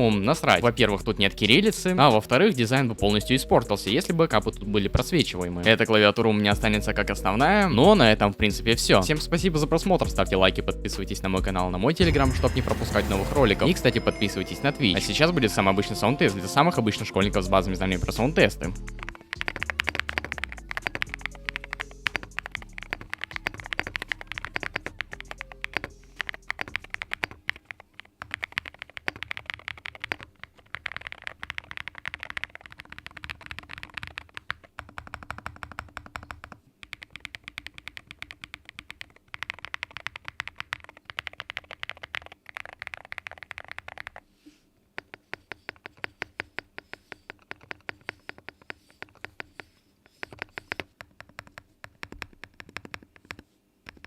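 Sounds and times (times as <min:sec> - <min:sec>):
mechanical keyboard typing: 0:18.8 - 0:44.2, 0:45.0 - 0:54.0.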